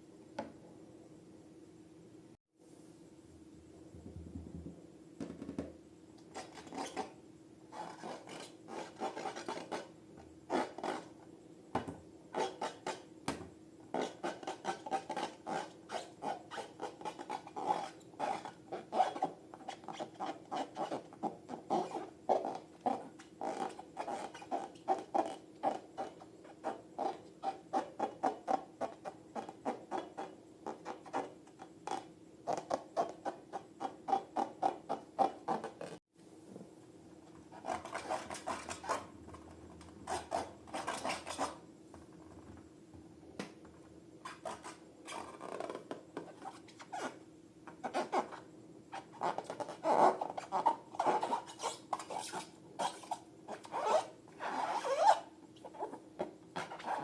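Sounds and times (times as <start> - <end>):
faint steady hum: 0.0 - 57.0
slime rubbing and scraping: 37.5 - 39.1, 40.0 - 41.6.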